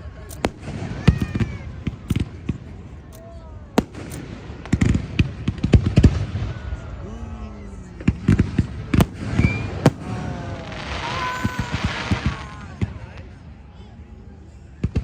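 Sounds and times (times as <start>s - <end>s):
firework shells bursting: 0.3s - 3.2s, 3.8s - 6.3s, 8.0s - 12.6s.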